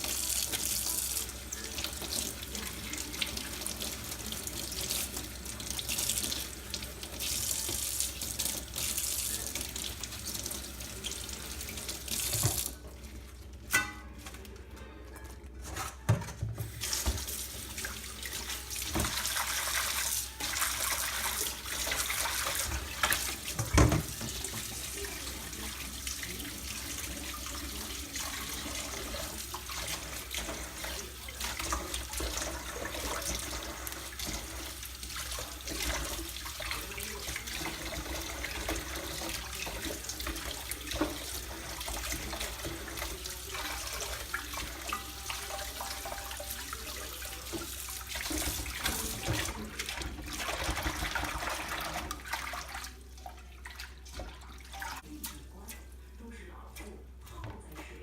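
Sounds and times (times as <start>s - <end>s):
tap running into a sink: 3.2s - 12.9s, 16.1s - 24.9s.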